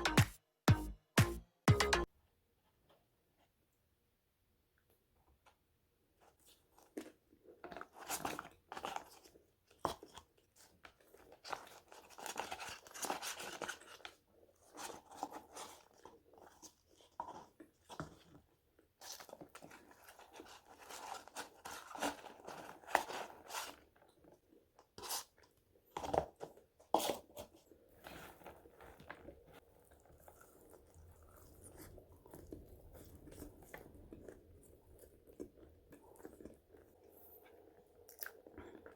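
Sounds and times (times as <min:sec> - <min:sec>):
chewing crispy fries: 0:28.6 - 0:38.9.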